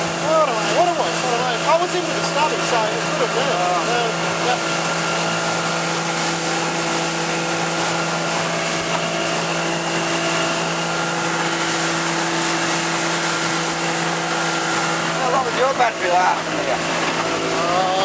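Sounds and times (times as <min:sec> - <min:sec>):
boat motor running: 0:00.0 - 0:18.0.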